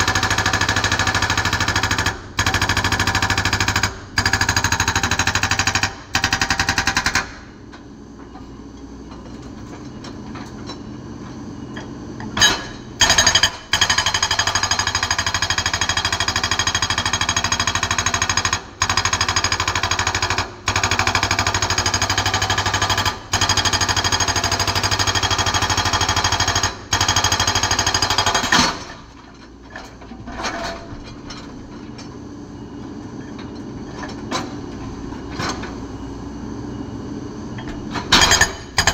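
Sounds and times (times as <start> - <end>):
hydraulic rock breaker hammering: 0.0 - 7.6, 11.7 - 31.7, 37.6 - 38.9.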